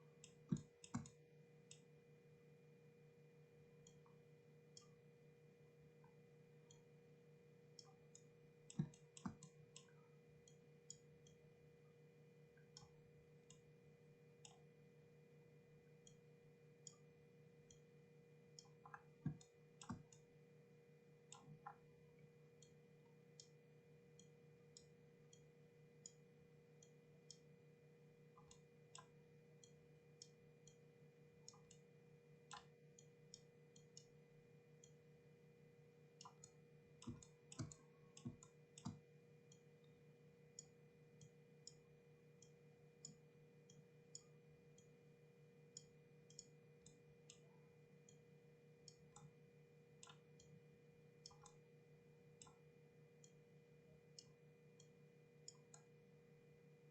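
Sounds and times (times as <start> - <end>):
mouse and keyboard clicks: 0.2 - 1.2, 36.2 - 39.0.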